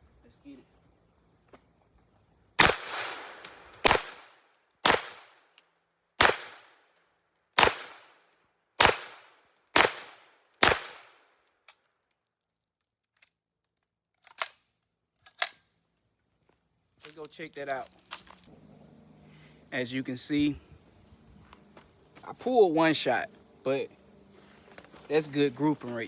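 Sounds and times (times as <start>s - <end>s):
pistol gunshots: 2.6s - 5.4s, 6.2s - 6.7s, 7.6s - 8.2s, 8.8s - 11.2s.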